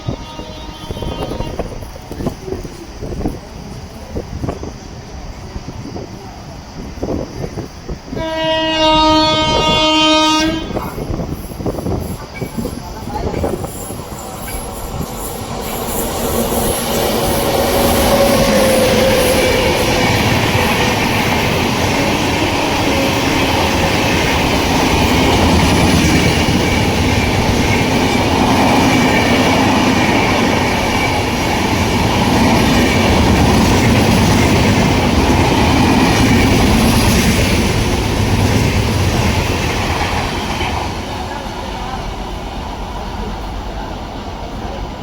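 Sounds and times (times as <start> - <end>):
train coaches rumbling: 0.0 - 45.0.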